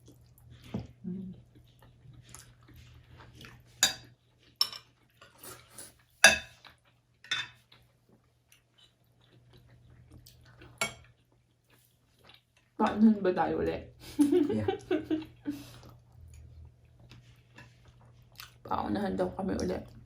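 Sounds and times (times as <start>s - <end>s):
faint eating noises: 0.0s - 20.0s
spoon clinking against bowl: 6.2s - 6.5s.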